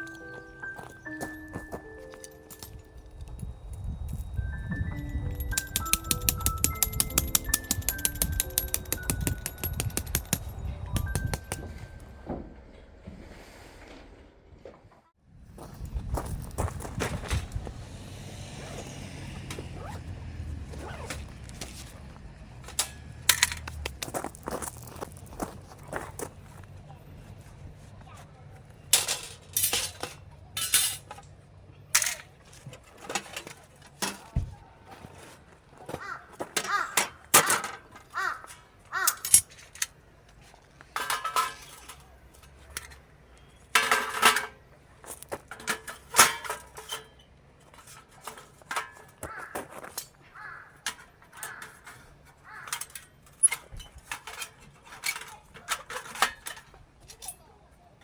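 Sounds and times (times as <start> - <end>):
hard gear clinking and knocking: 0.0 - 12.6
short metallic rings: 4.8 - 12.3.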